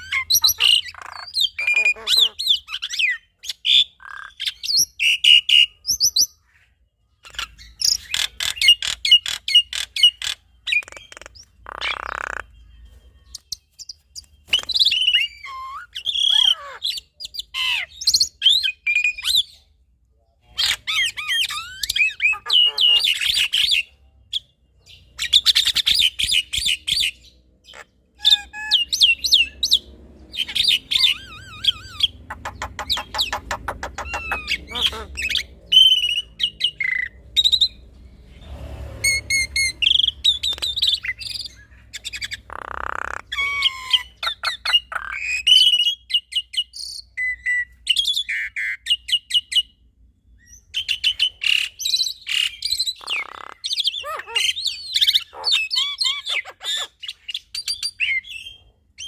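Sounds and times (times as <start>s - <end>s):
mynas chattering: 31.1s - 35.6s.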